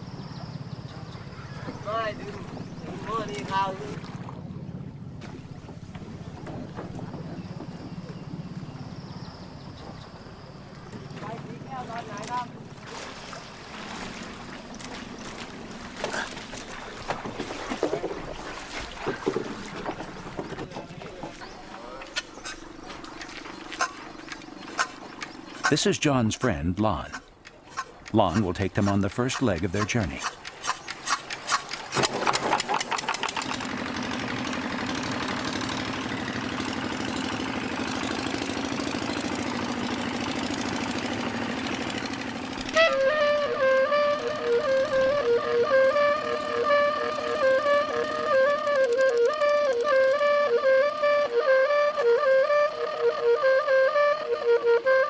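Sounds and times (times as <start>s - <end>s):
boat motor humming: 0.0s - 55.0s
short sharp sounds: 25.6s - 30.4s.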